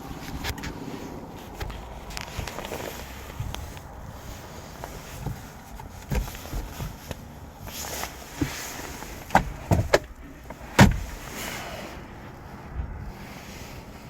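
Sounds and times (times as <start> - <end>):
sharp knocks and thumps: 5.1 - 7.2, 8.3 - 11.2.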